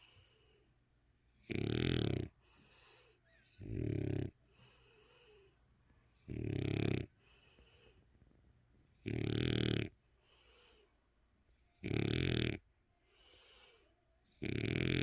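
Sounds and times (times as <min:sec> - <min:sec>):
dog snoring: 0:01.4 - 0:02.4, 0:03.6 - 0:04.4, 0:06.2 - 0:07.2, 0:08.9 - 0:10.0, 0:11.8 - 0:12.7, 0:14.4 - 0:15.0.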